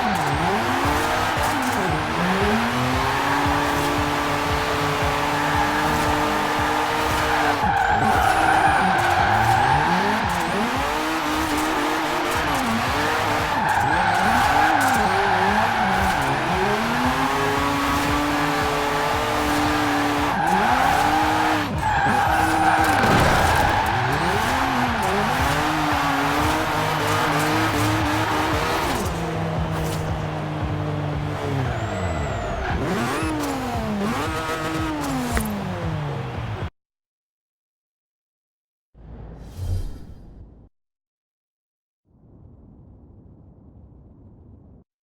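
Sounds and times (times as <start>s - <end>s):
car engine revving: 0.0s - 36.7s
tyres squealing: 7.0s - 30.1s.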